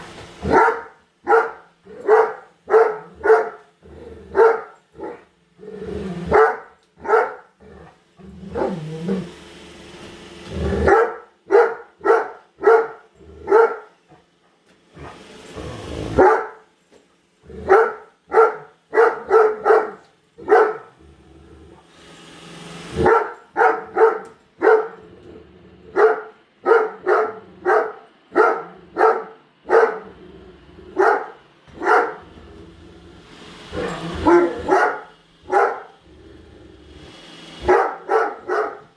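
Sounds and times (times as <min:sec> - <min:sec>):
dog barking deeply: 0:00.4 - 0:03.6, 0:04.3 - 0:05.2, 0:06.2 - 0:07.4, 0:10.7 - 0:13.9, 0:16.2 - 0:16.6, 0:17.6 - 0:20.9, 0:23.0 - 0:25.0, 0:25.9 - 0:30.3, 0:30.9 - 0:32.4, 0:33.8 - 0:36.0, 0:37.6 - 0:38.9.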